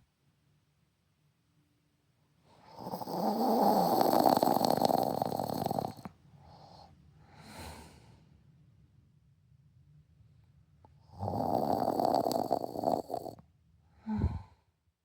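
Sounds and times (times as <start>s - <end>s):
soft breaths: 2.4s - 8.4s, 12.2s - 14.8s
woman snoring heavily: 2.6s - 6.1s, 11.1s - 13.4s.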